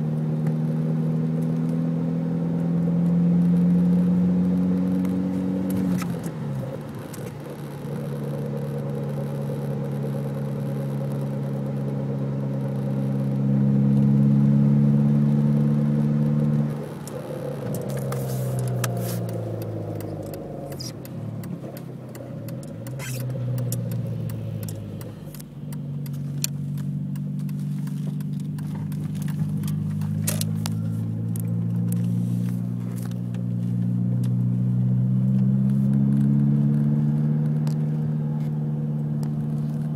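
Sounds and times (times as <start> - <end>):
car engine running: 0.0 - 39.9.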